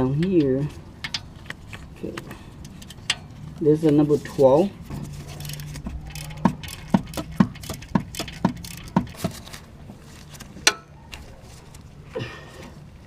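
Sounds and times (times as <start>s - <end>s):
ratchet wrench clicking: 5.4s - 9.4s.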